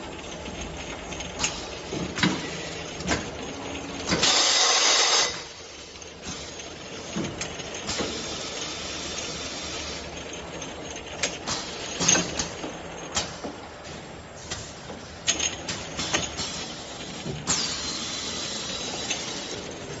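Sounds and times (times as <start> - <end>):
washing machine spray hiss: 4.1 - 5.4.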